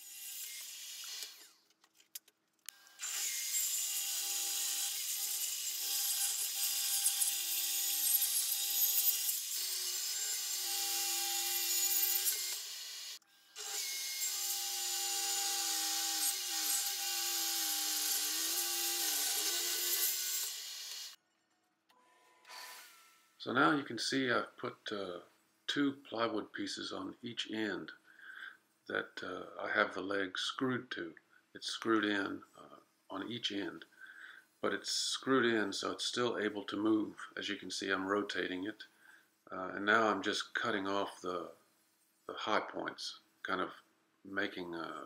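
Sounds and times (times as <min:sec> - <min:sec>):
table saw cutting wood: 0:00.0 - 0:01.6, 0:02.8 - 0:21.2, 0:22.3 - 0:23.4.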